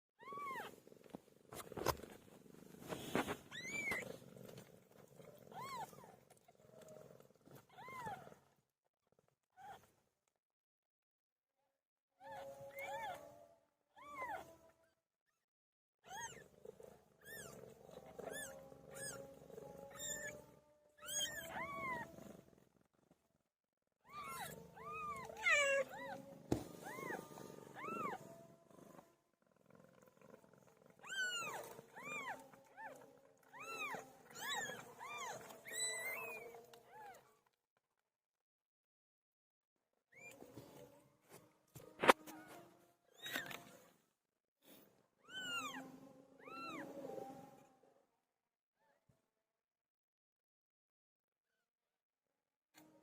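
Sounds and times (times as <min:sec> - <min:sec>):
newborn kittens mewing: 0:00.2 - 0:00.8, 0:02.9 - 0:06.5, 0:16.0 - 0:16.5, 0:17.1 - 0:22.2, 0:24.0 - 0:28.4, 0:31.0 - 0:37.3, 0:42.0 - 0:43.7, 0:45.2 - 0:46.9.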